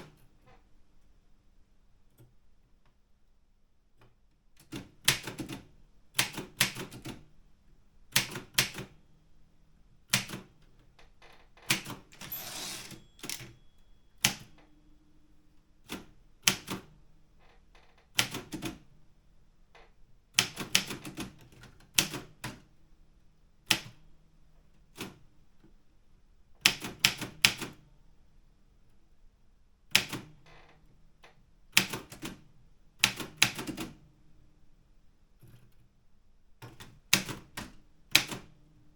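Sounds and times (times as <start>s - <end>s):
manual typewriter key strikes: 11.7s - 13.6s.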